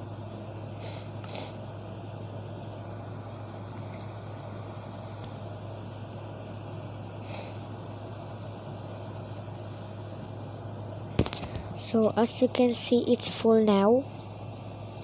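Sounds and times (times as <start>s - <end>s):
steady low hum: 0.0s - 15.0s
short hissing puff: 0.8s - 1.6s, 7.2s - 7.6s.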